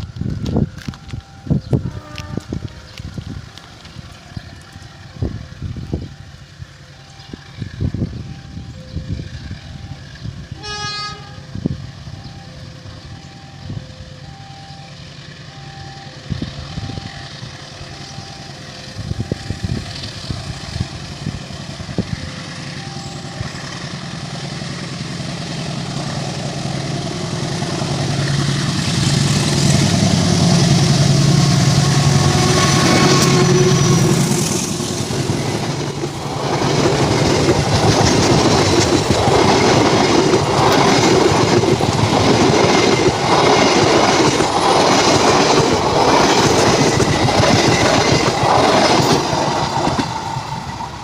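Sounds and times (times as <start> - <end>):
level crossing alarm: 0.0 - 1.9, 11.9 - 21.0, 21.6 - 24.9
locomotive engine rumble: 0.0 - 51.0
horn toot: 1.8 - 2.6, 10.6 - 11.6.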